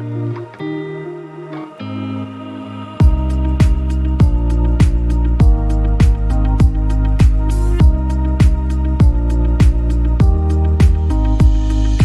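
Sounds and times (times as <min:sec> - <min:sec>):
electronic music with steady beat: 0:00.0 - 0:12.0.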